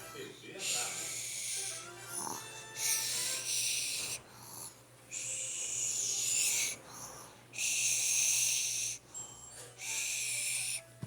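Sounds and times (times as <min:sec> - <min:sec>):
child fake-snoring: 0:00.9 - 0:09.0, 0:09.8 - 0:10.8.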